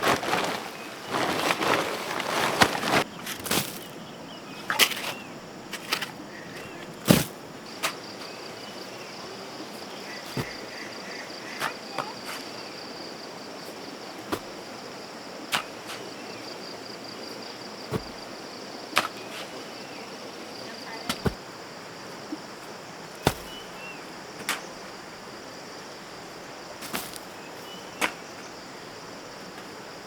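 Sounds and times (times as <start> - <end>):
insects buzzing: 0.0 - 30.0.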